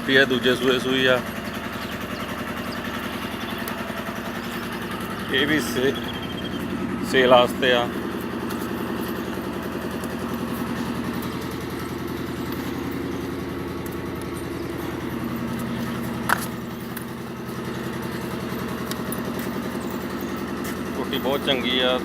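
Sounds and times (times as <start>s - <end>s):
engine idling: 0.0s - 22.0s.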